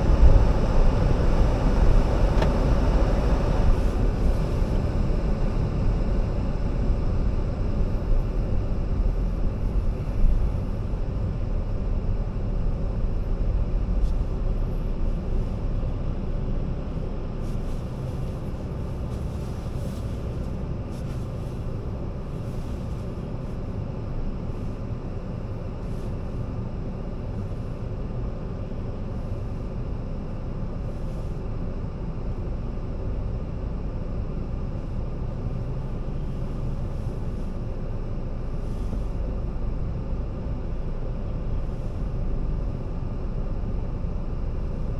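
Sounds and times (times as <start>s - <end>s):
car road and engine rumble: 0.0s - 44.9s.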